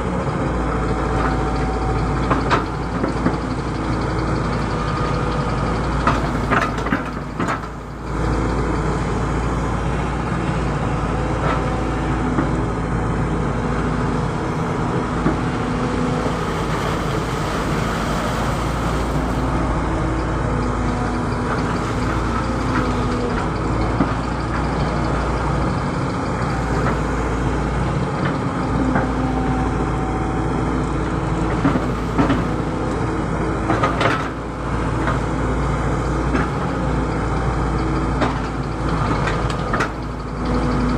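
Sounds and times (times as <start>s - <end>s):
excavator engine hum: 0.0s - 40.9s.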